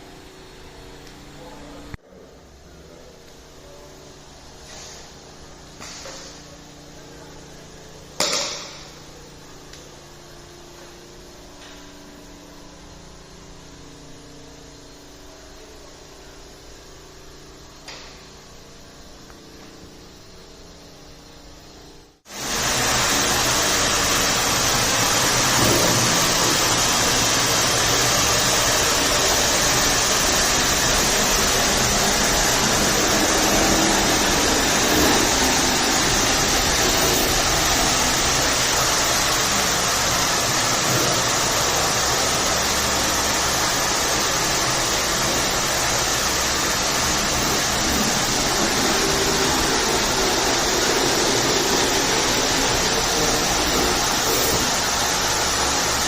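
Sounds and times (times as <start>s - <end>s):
cleaning machine rushing hiss: 22.2s - 56.0s.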